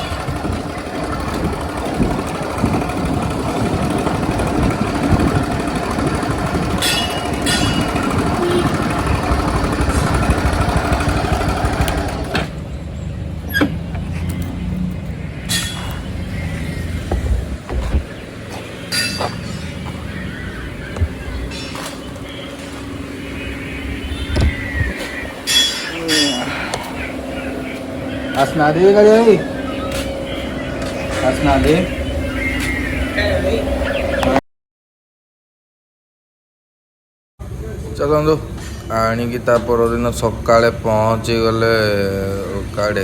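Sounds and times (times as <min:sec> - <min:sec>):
motorcycle engine: 0:00.0 - 0:34.4
road traffic: 0:00.0 - 0:34.4, 0:37.4 - 0:43.0.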